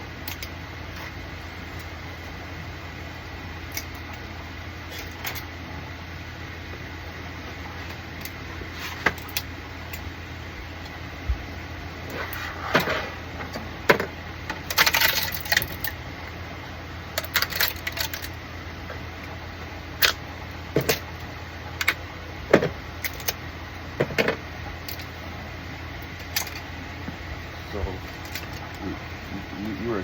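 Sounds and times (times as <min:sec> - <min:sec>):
steady low hum: 0:00.0 - 0:30.0
plastic parts clicking and snapping: 0:17.2 - 0:18.4, 0:23.0 - 0:23.4.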